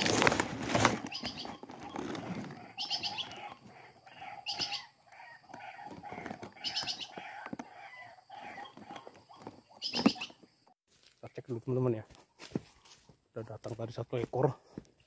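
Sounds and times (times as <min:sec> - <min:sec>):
waterhen harsh calls: 0:01.1 - 0:09.0.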